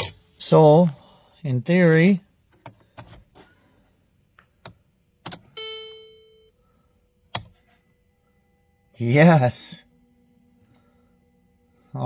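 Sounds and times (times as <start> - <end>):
key clicking in ignition switch: 4.6 - 5.6, 7.3 - 7.6.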